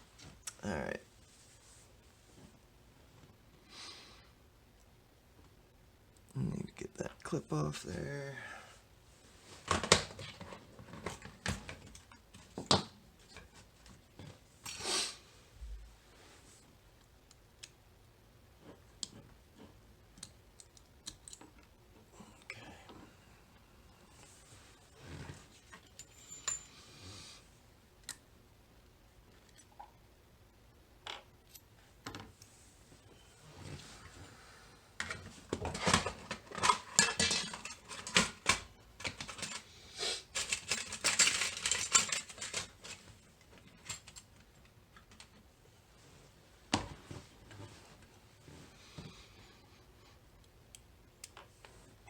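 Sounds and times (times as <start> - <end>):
lock parts rattling: 35.7 - 39.6, 40.3 - 45.3.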